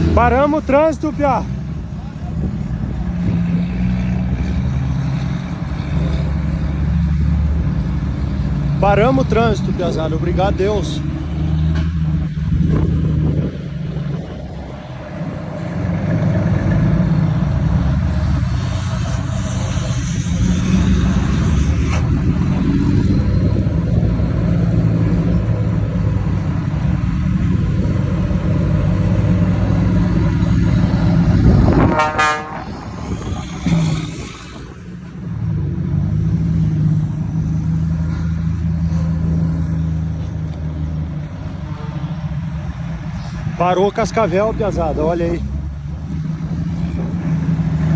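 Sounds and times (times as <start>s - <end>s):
truck engines rumbling: 0.0s - 47.9s
truck horn blast: 31.6s - 33.8s.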